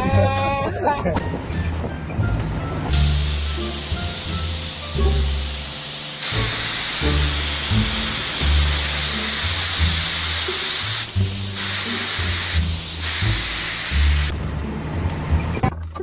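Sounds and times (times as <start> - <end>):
background music with bass line: 0.0 - 15.7
steady hiss: 2.9 - 14.3.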